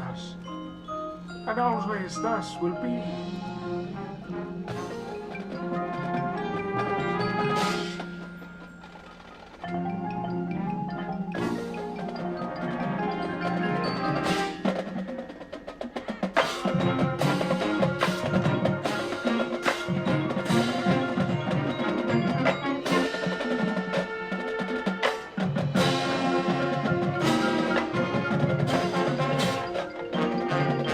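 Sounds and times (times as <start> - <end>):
marching band chords: 0.0 - 30.9
struck drums and mallets: 0.0 - 30.9.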